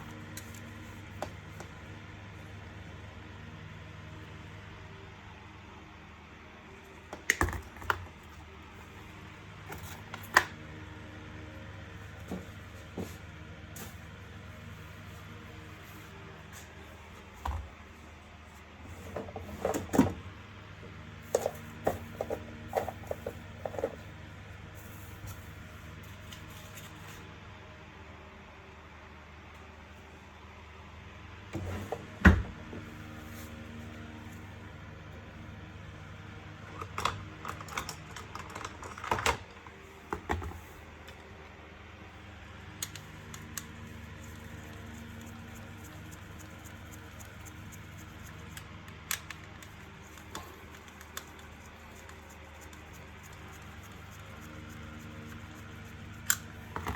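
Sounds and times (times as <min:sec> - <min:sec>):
steady low hum: 0:39.5 - 0:56.9.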